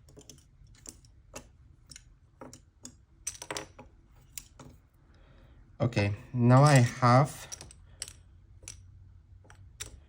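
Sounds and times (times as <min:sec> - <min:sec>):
plastic puzzle pieces clicking: 0:09.4 - 0:10.0.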